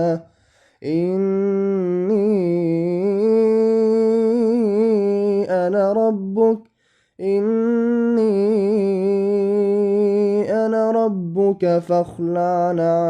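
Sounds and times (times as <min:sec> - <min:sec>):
man chanting melodically: 0:07.2 - 0:13.0.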